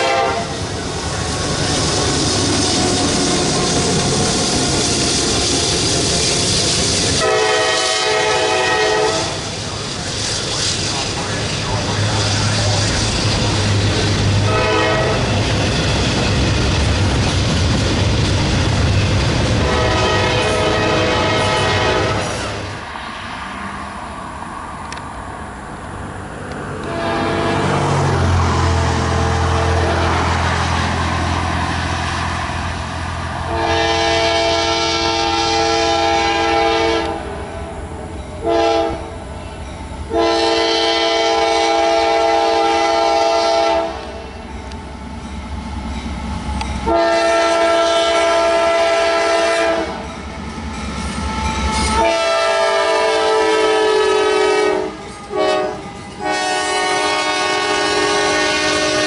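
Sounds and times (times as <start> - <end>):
train horn blasts: 0.0 - 0.6, 7.1 - 9.5, 14.4 - 15.4, 19.6 - 22.7, 26.8 - 30.4, 33.4 - 37.3, 38.4 - 39.2, 40.1 - 44.2, 46.8 - 50.1, 51.2 - 59.0
passing train rumble: 0.0 - 59.0.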